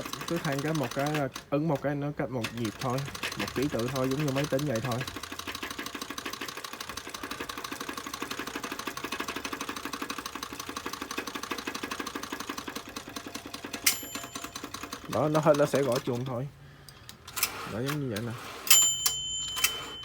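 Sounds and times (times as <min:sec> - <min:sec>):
typewriter carriage clicks: 0:00.0 - 0:06.7, 0:13.5 - 0:16.4, 0:17.2 - 0:20.0
typewriter bell ding: 0:03.6 - 0:05.0, 0:13.7 - 0:16.0, 0:18.6 - 0:20.0.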